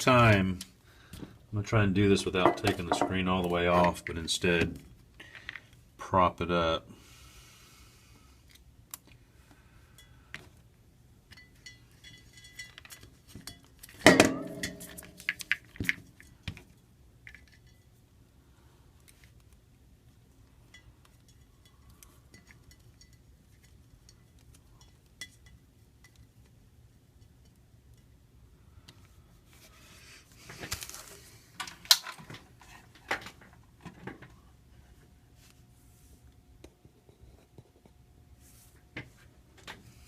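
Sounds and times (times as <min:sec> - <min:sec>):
small tools tapping and clinking: 0:02.4 - 0:04.2, 0:11.3 - 0:18.0.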